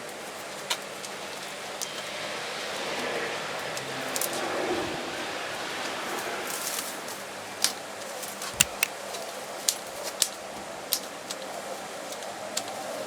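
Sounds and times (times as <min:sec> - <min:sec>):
sharp clicks or snips: 0:08.6 - 0:08.9.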